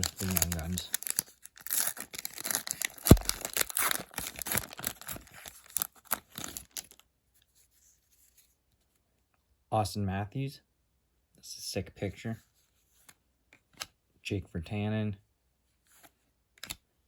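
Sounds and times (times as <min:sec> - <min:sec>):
wrapper tearing and crinkling: 0:00.0 - 0:07.0.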